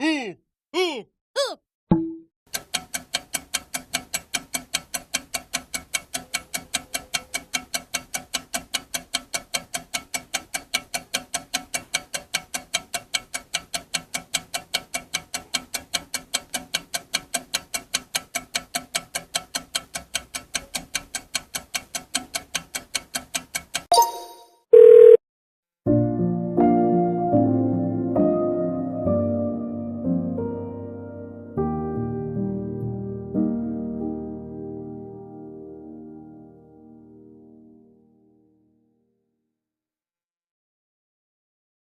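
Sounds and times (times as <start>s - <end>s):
clock-like ticking: 2.0s - 23.9s.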